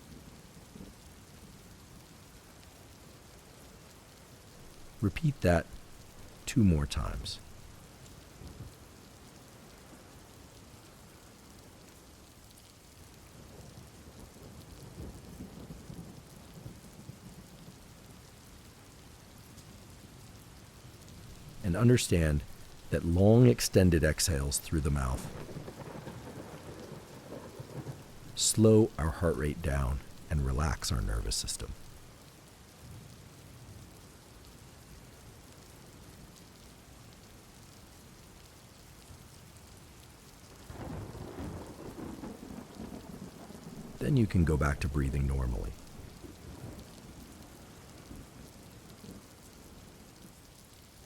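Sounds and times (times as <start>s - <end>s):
steady rain falling: 0.0s - 51.0s
thunder rumbling: 21.2s - 32.1s, 40.7s - 46.8s
low rumbling thunder: 25.1s - 28.4s, 40.7s - 44.0s.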